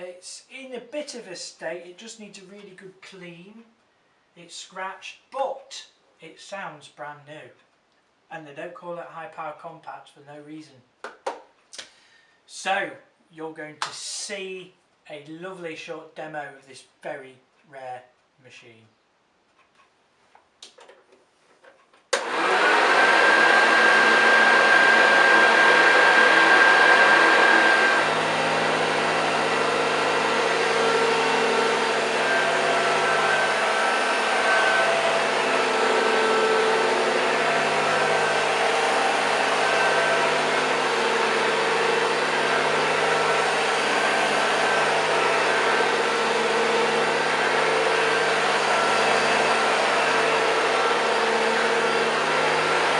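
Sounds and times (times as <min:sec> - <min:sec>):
vacuum cleaner motor whining: 0:22.2 - 0:52.9.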